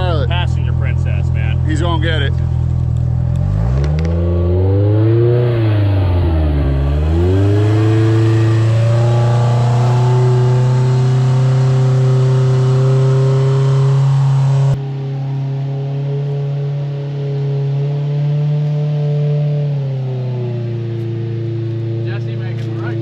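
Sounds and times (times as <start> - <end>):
engine revving hard: 3.3 - 14.8.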